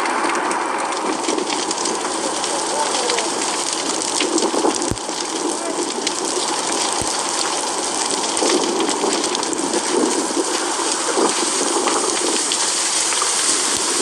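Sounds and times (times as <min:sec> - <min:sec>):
wildfire rushing and crackling: 0:00.0 - 0:14.0.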